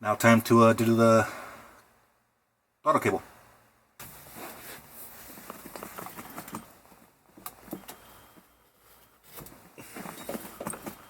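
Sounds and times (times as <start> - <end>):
rustling: 4.0 - 11.0
handling clicks and jangles: 5.6 - 6.8, 10.0 - 11.0.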